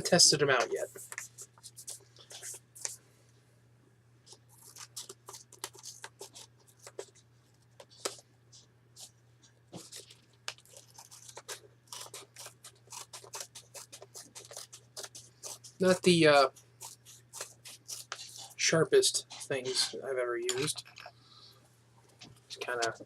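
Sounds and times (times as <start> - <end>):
scissors snipping: 9.8 - 16.0.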